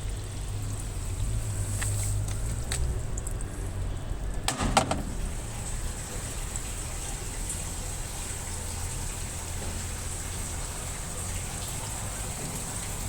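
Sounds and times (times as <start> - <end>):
washing machine low hum: 4.4 - 13.0
washing machine water rushing: 4.5 - 13.0.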